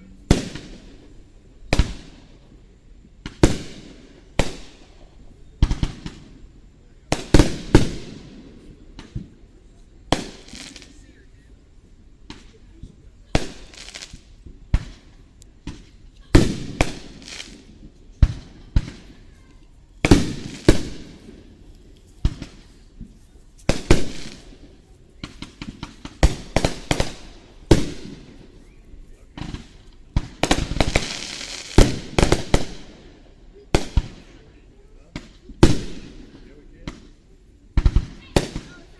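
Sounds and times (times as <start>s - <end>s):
fireworks bursting with crackle: 0.0s - 38.9s.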